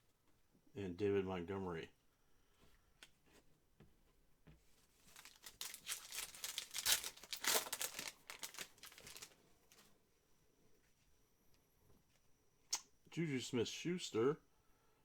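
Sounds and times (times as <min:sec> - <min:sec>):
wrapper crinkling and tearing: 0:05.0 - 0:09.8.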